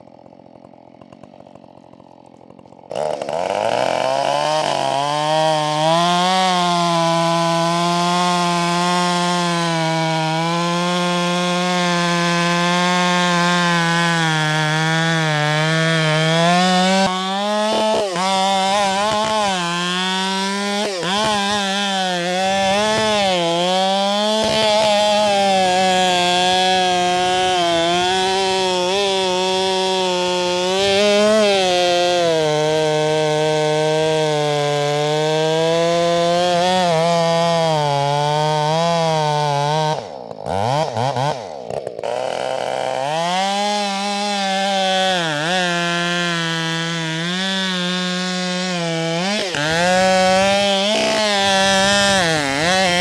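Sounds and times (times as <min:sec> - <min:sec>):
chainsaw cutting through wood: 0:00.0 - 0:53.0.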